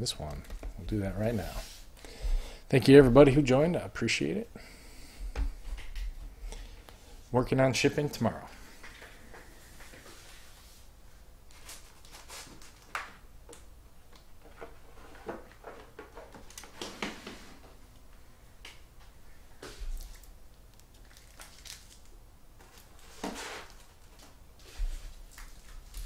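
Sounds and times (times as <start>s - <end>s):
rustling scrapes: 1.1s - 1.9s, 22.9s - 23.9s.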